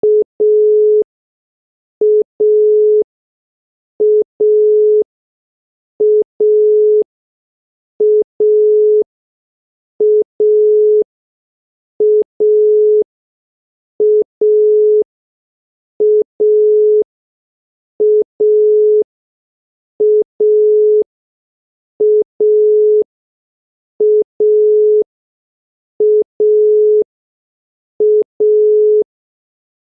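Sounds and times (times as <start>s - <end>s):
telephone dial tone beeps: 0.0s - 1.1s, 2.0s - 3.1s, 4.0s - 5.1s, 6.0s - 7.1s, 8.0s - 9.1s, 10.0s - 11.1s, 12.0s - 13.1s, 14.0s - 15.1s, 16.0s - 17.1s, 18.0s - 19.1s, 20.0s - 21.1s, 22.0s - 23.1s, 24.0s - 25.1s, 26.0s - 27.1s, 28.0s - 29.1s.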